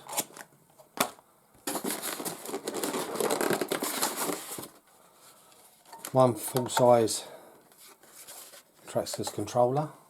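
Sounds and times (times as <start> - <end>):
plastic packaging crinkling: 0.0 - 4.9.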